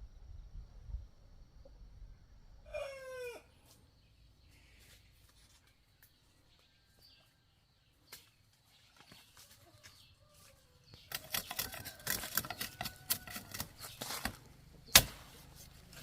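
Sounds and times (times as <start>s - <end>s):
chicken call: 2.7s - 3.5s.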